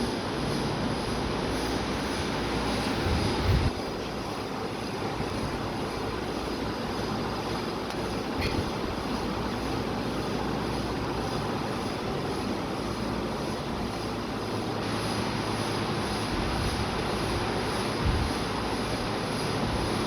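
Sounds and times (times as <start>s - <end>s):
steady mechanical whir: 0.0s - 20.0s
hiss: 8.2s - 20.0s.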